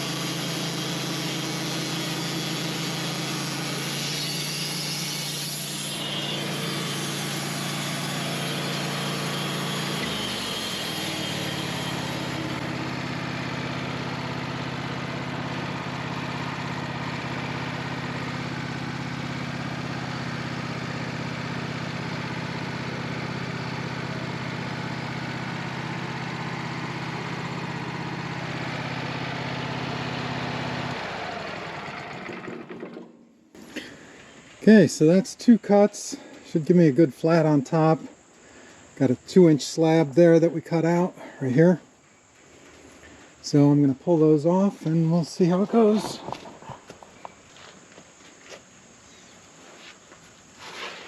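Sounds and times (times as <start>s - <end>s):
sawmill cutting a log: 0.0s - 33.9s, 43.5s - 46.5s.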